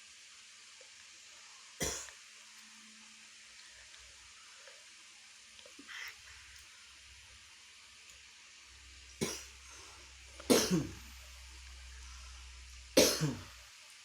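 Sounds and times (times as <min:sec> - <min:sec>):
man coughing: 0:10.5 - 0:11.0, 0:13.0 - 0:13.5.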